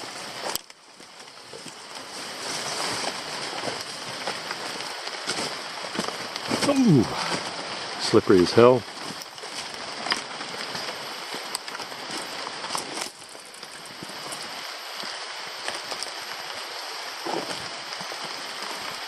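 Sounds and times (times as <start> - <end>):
steady rain: 0.0 - 19.0
raindrops tapping: 3.4 - 16.7.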